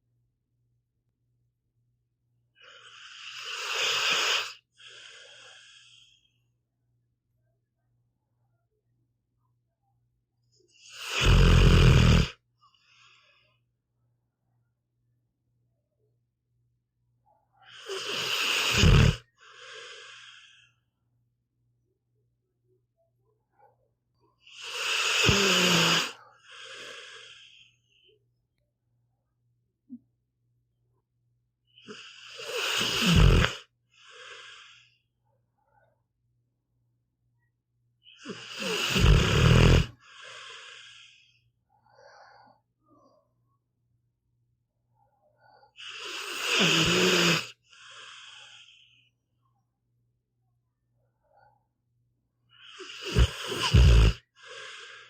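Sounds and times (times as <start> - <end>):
weak breath: 2.6 - 6.5, 17.7 - 20.9, 24.7 - 28.2, 39.9 - 43.2, 45.2 - 49.2, 52.6 - 55.0
dog snoring: 2.7 - 5.9, 10.9 - 12.4, 17.7 - 20.6, 24.4 - 27.6, 31.8 - 34.8, 38.2 - 41.0, 45.8 - 48.8, 52.6 - 55.0.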